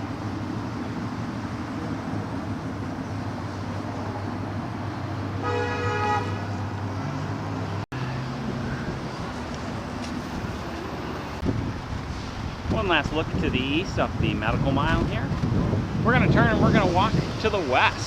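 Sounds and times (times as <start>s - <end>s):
idling traffic rumble: 0.0s - 18.0s
vehicle horn honk: 5.4s - 6.6s.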